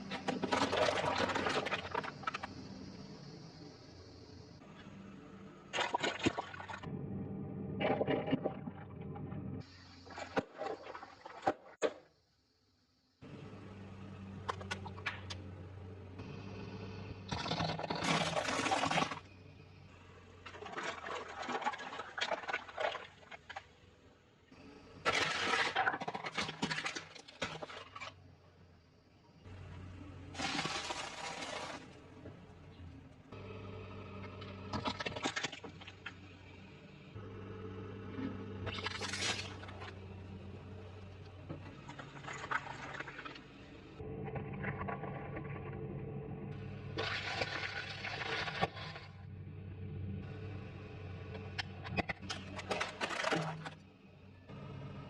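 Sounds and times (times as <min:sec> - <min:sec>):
steady low hum: 0:12.9 - 0:18.5.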